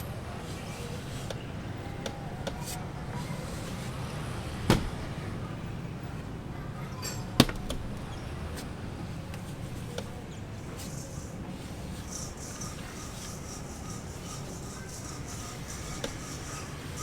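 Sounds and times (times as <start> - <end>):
loud sharp knocks: 4.6 - 5.1.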